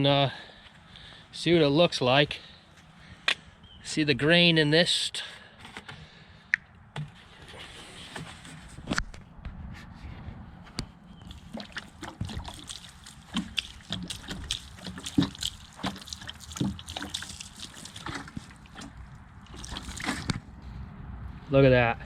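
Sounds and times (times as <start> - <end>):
water splashing off wood: 11.2 - 20.4.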